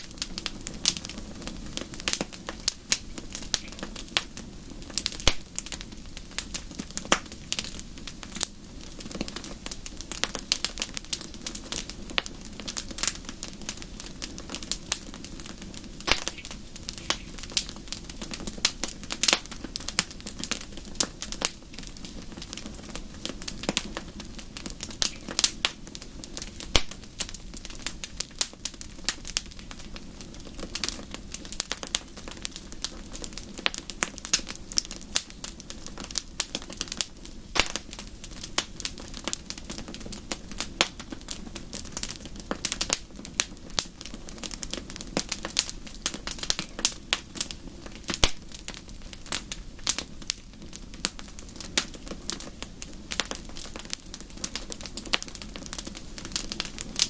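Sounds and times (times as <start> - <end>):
low rumble of flames: 0.0 - 57.0
wood fire crackling: 0.0 - 57.0.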